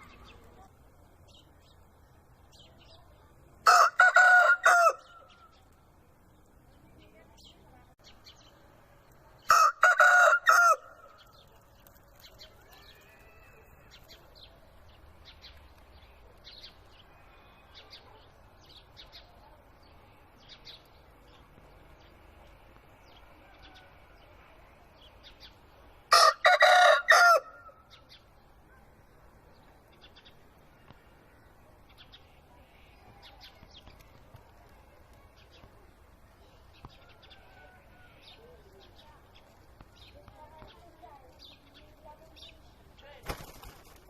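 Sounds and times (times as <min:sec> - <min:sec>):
rooster crowing: 0:03.6 - 0:05.1, 0:09.5 - 0:11.0, 0:26.1 - 0:27.8, 0:37.2 - 0:38.3.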